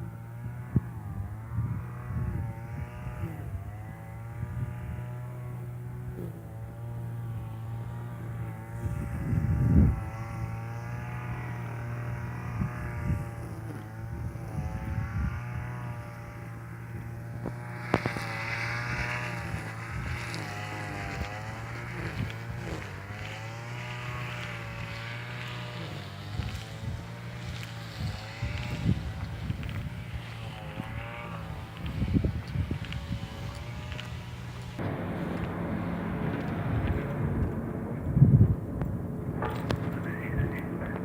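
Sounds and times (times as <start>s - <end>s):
engine running with wavering pitch: 0.0s - 41.0s
low rumble: 28.5s - 41.0s.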